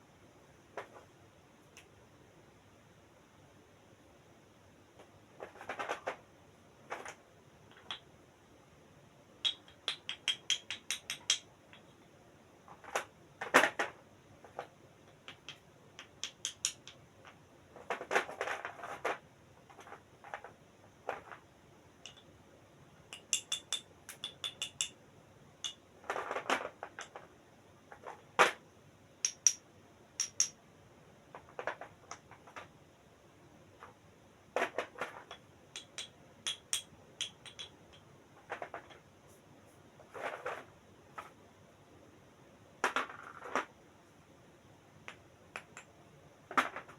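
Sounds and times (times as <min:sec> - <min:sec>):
sharp clicks and taps: 0:09.4 - 0:12.0, 0:15.1 - 0:17.4, 0:23.1 - 0:25.0, 0:35.3 - 0:38.1, 0:45.0 - 0:45.9.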